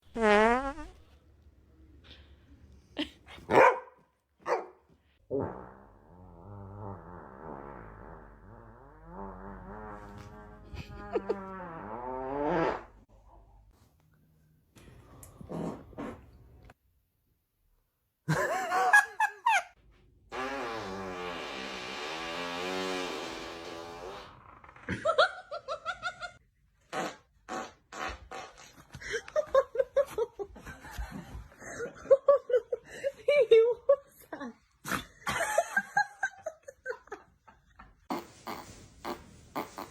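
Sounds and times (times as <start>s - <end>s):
fart sound effect: 0.0s - 1.1s, 5.3s - 13.0s, 20.3s - 25.0s, 26.9s - 28.8s, 38.1s - 39.9s
dog barking: 3.5s - 4.8s
person laughing hard: 18.3s - 19.7s.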